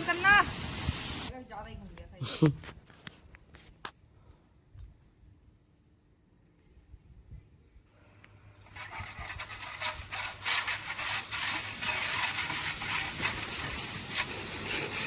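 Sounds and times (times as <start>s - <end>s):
pressure washer spray hiss: 0.0s - 1.3s, 9.4s - 15.0s.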